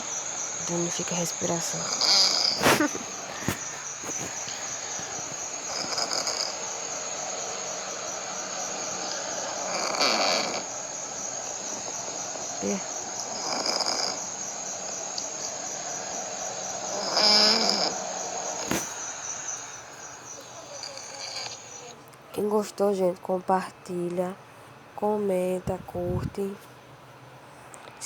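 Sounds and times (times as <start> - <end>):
high-pitched chirring: 0.0 - 22.0
cat snoring: 1.7 - 22.0.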